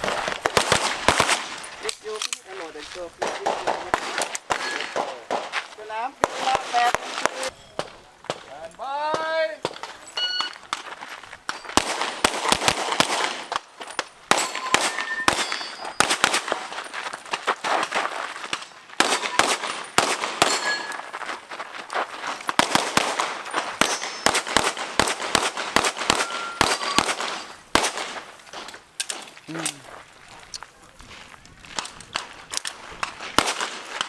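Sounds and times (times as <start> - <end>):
rapid pistol fire: 0.4 - 1.6, 11.8 - 13.6, 19.0 - 20.7, 22.6 - 28.2, 33.2 - 34.0
steel targets ringing: 9.9 - 10.7, 14.0 - 16.7, 19.0 - 21.2, 23.5 - 24.6, 26.1 - 27.6.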